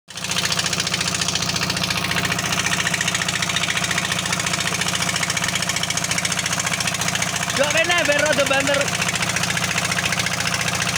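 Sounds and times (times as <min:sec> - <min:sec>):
diesel engine idling: 0:00.1 - 0:10.9.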